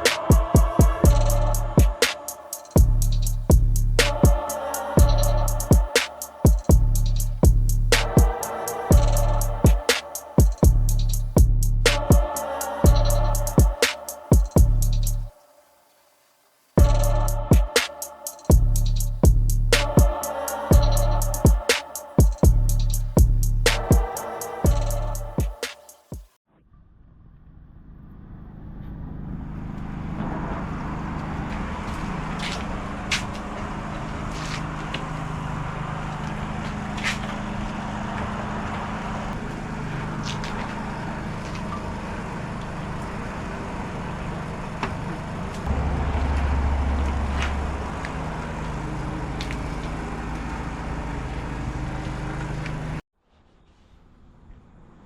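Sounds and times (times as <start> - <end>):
outdoor vehicle noise: 0.0 - 15.4, 16.8 - 55.0
deep rumble: 0.8 - 2.0, 2.8 - 4.4, 6.6 - 9.8, 10.5 - 12.3, 12.9 - 13.8, 14.5 - 15.3, 16.8 - 17.7, 18.5 - 21.6, 45.7 - 48.7.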